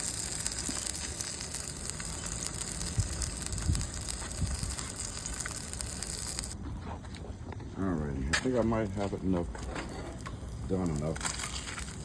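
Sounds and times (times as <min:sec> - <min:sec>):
fish sizzling in oil: 0:00.0 - 0:06.6.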